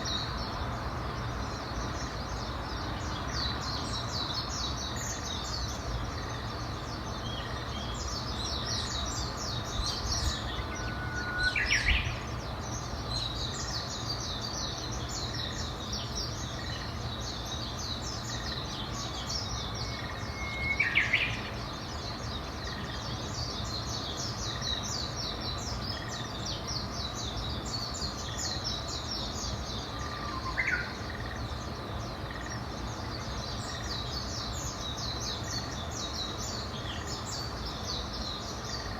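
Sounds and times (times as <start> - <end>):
birds chirping and singing: 1.2 - 38.9
bird call sweeping up in pitch: 10.6 - 12.0.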